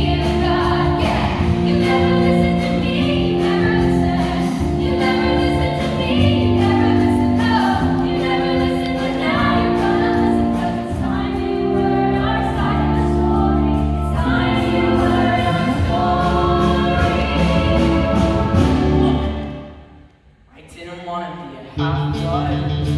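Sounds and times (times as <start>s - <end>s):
instrumental accompaniment: 0.0s - 20.1s.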